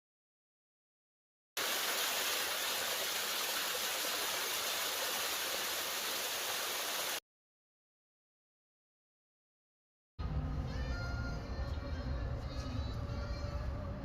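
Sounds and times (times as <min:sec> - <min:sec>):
rushing water: 0:01.6 - 0:07.2.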